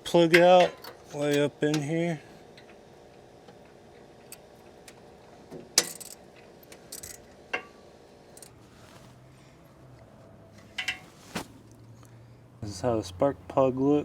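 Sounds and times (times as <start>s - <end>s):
hand tools clinking on metal: 0.2s - 1.9s, 10.7s - 11.2s.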